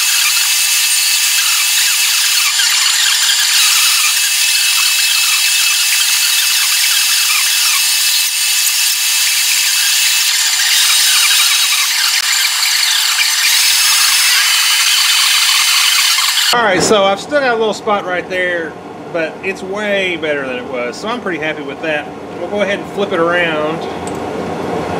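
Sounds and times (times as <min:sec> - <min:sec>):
file rasping on metal: 0:00.0 - 0:16.6.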